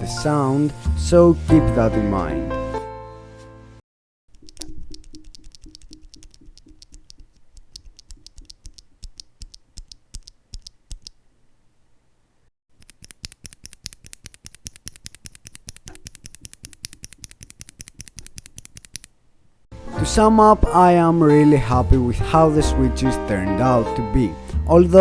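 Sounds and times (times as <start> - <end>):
mechanical keyboard key clacks: 12.8 - 19.1.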